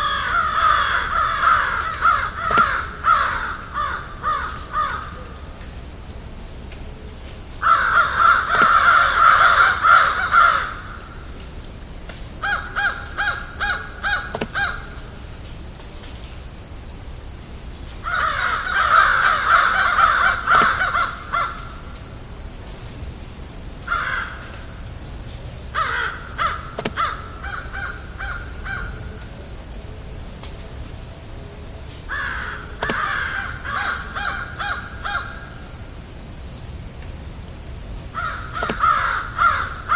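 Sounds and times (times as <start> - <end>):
crows cawing: 0.0 - 5.4, 7.6 - 11.2, 12.4 - 15.1, 18.0 - 21.8, 23.9 - 24.6, 25.7 - 29.0, 32.1 - 35.6, 38.1 - 39.9
steady high hiss: 0.0 - 39.9.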